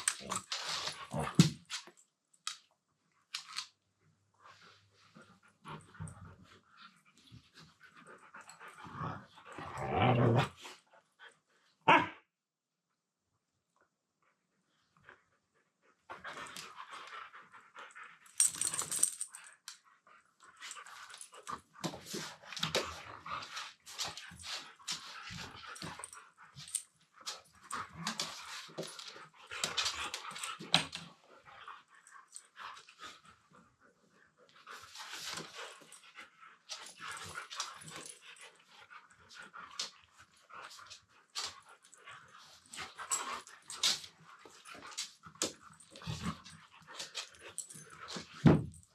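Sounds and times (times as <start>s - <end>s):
dogs grumbling: 8.8s - 10.6s.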